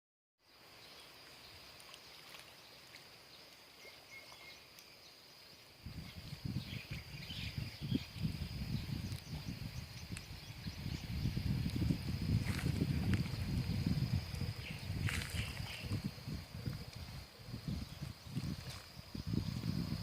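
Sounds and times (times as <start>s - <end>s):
faint chirps: 0.5s - 11.9s
high-pitched insect drone: 5.8s - 20.0s.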